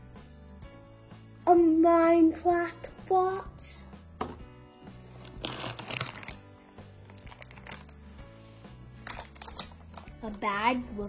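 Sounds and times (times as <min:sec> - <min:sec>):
background music with bass line: 0:00.0 - 0:11.0
toy packaging crinkling: 0:05.2 - 0:08.0, 0:09.0 - 0:10.4.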